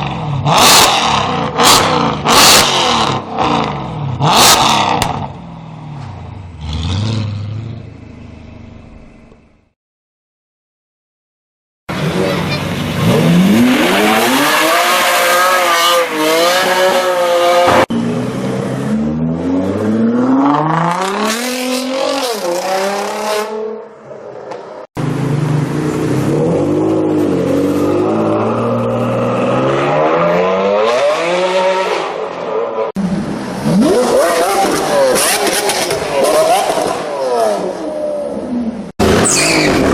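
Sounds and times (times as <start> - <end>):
car engine revving: 11.9 - 23.6.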